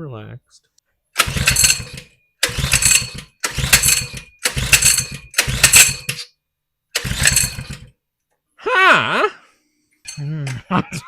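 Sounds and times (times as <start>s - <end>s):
small engine being pull-started: 1.2s - 6.3s, 6.9s - 7.9s.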